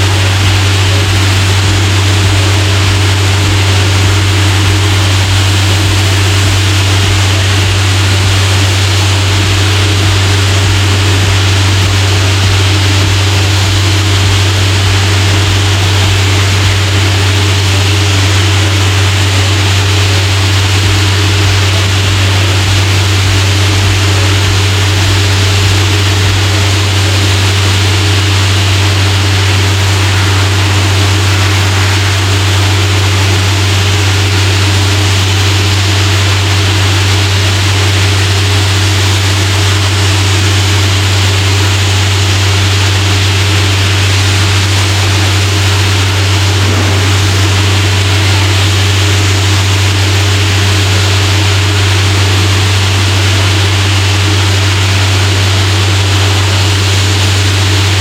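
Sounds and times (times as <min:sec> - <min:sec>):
compressed air hissing: 0:00.0 - 0:37.0, 0:45.1 - 0:50.8
diesel compressor engine running: 0:00.0 - 0:58.0.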